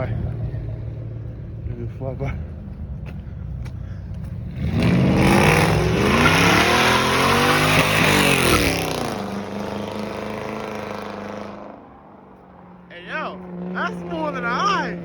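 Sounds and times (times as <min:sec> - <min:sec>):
steady engine hum: 0:00.0 - 0:15.0
car engine revving past: 0:04.5 - 0:15.0.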